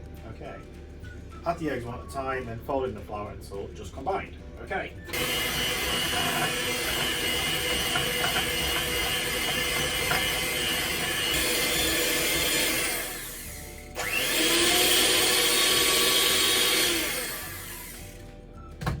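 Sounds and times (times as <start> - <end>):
electric mixer running: 5.1 - 18.3.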